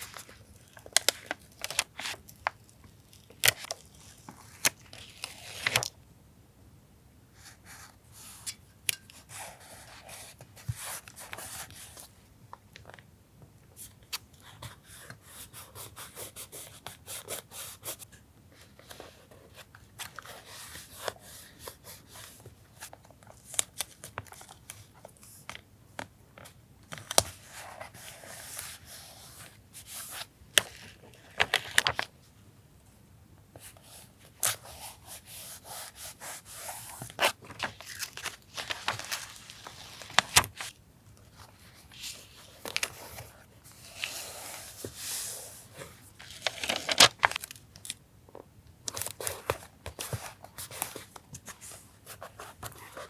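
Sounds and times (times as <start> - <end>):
paper rustling: 0.0 - 5.9, 30.0 - 32.1, 36.5 - 47.7.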